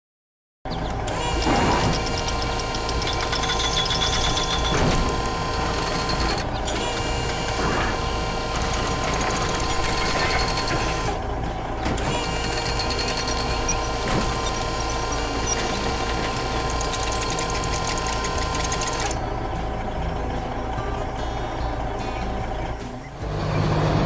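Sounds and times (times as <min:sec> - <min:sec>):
construction vehicle engine rattling: 0:00.7 - 0:24.0.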